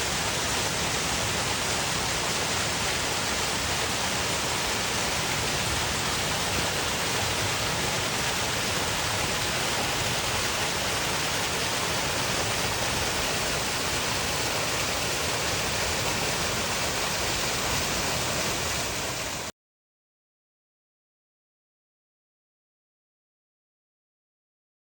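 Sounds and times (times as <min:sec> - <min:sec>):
large waterfall rushing: 0:00.0 - 0:19.5.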